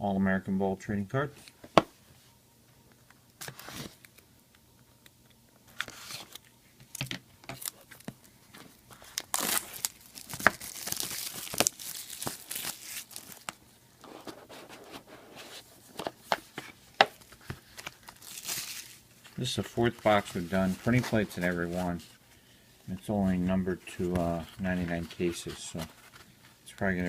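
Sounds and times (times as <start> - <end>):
packaging tearing and rustling: 8.9 - 13.6, 16.2 - 22.0.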